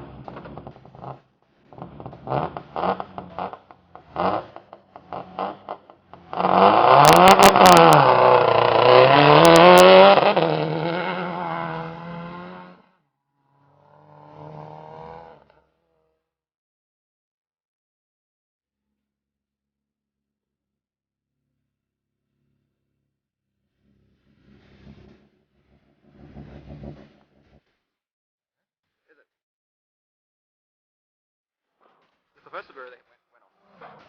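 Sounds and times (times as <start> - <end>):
rally car engine revving: 0.0 - 16.0, 23.7 - 27.8.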